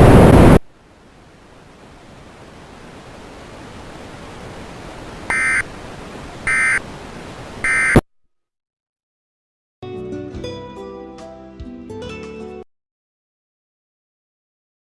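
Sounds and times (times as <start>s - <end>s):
static hiss: 0.0s - 8.0s
buzzy data bursts: 5.3s - 5.7s, 6.4s - 6.8s, 7.6s - 8.0s.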